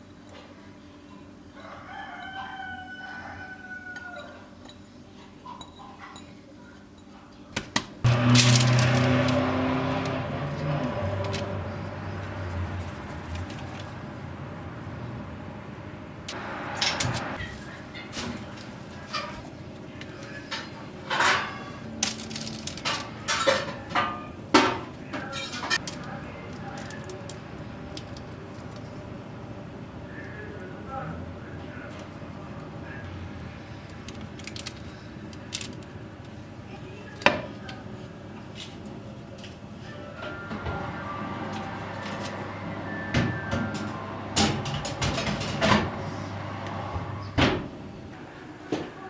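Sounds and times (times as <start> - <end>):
rooster crowing: 1.6 - 4.5.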